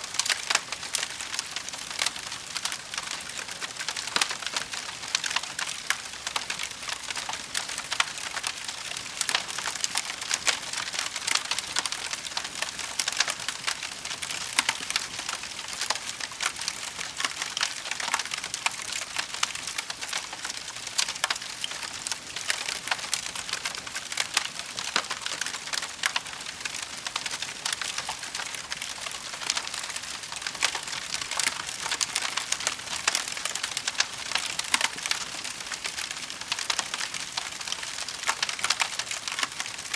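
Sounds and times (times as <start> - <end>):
wood fire crackling: 0.0 - 39.9
fire snapping: 24.4 - 39.5.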